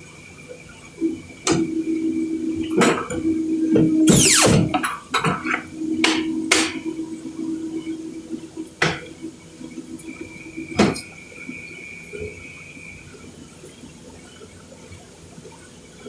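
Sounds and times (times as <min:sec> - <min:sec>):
steady low tone: 0:01.6 - 0:11.2.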